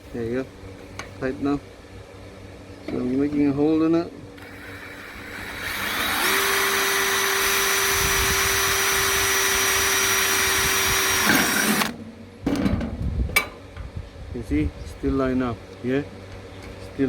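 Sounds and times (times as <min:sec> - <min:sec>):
electric drill boring into metal: 0:04.4 - 0:12.0.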